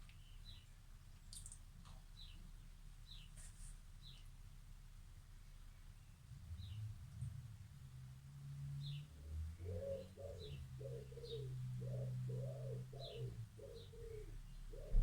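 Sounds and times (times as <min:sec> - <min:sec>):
pigeon cooing: 0:09.6 - 0:15.0.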